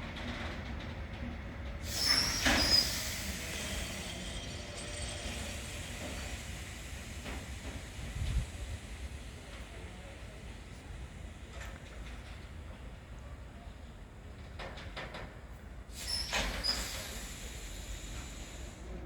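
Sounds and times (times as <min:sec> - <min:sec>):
freight train rumbling past: 0:00.0 - 0:19.0
wheel squeal: 0:01.9 - 0:05.6.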